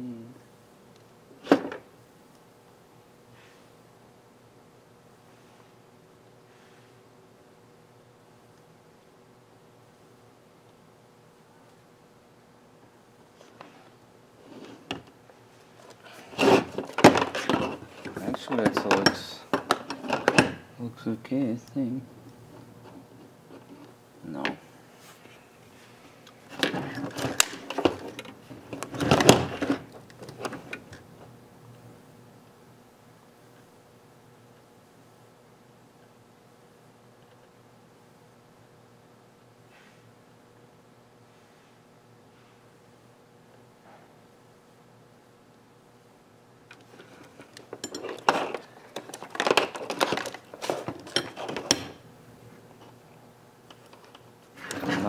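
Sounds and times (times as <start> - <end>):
small tools clicking and rattling: 46.7 - 52.0.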